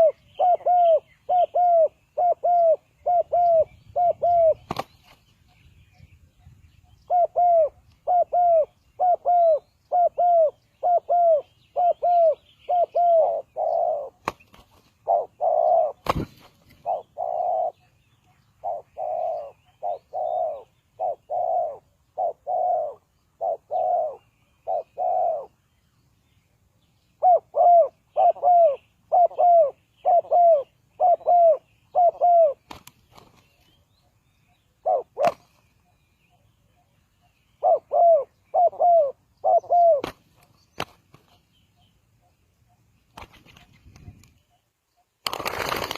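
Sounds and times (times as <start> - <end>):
dove cooing: 0.0 - 4.9, 6.4 - 14.4, 15.0 - 18.0, 18.6 - 25.6, 27.2 - 32.8, 34.8 - 35.5, 37.6 - 40.2.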